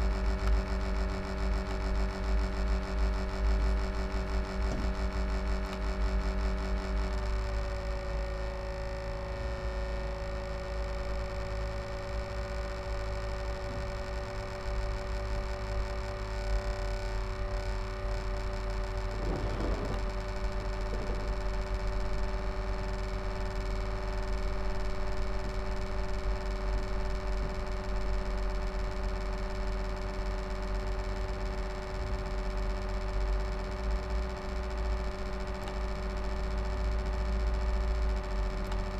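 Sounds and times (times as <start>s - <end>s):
laptop cooling fan humming: 0.0s - 38.9s.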